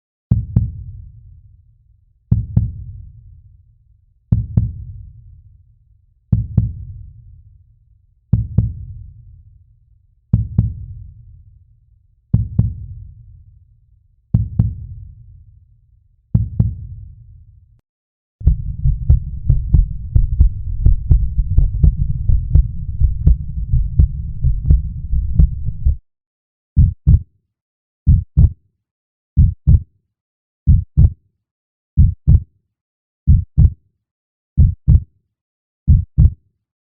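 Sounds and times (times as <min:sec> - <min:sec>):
heartbeat thumps: 0:04.3 - 0:04.8, 0:12.4 - 0:12.8, 0:14.4 - 0:14.9, 0:16.4 - 0:16.9, 0:18.4 - 0:26.0, 0:26.8 - 0:27.2, 0:28.1 - 0:28.6, 0:29.4 - 0:29.8, 0:30.7 - 0:31.1, 0:32.0 - 0:32.4, 0:33.3 - 0:33.8, 0:34.6 - 0:35.0, 0:35.9 - 0:36.4.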